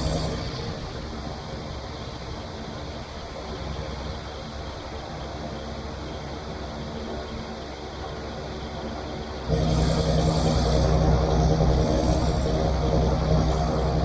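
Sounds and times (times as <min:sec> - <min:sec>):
tractor diesel engine running: 0:09.5 - 0:14.0.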